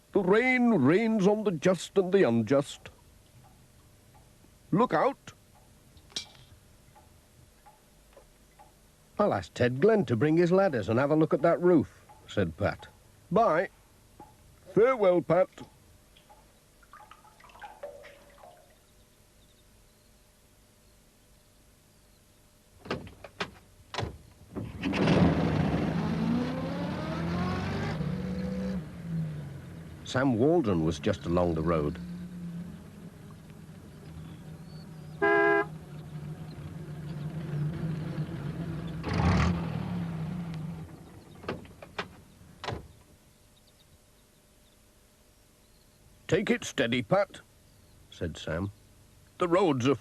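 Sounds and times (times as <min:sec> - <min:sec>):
van engine starting and running: 0:22.9 - 0:43.0.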